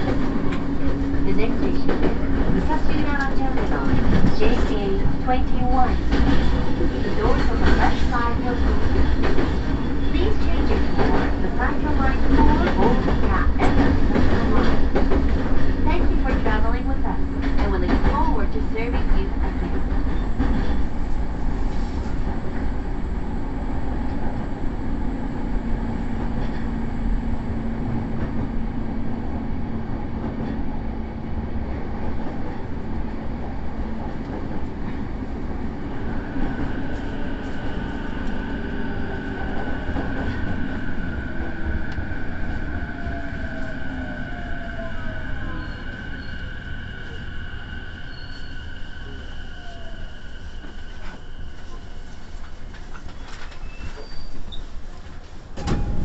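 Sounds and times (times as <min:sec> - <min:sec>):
falling tones of train slowing: 0:35.7 - 0:54.8.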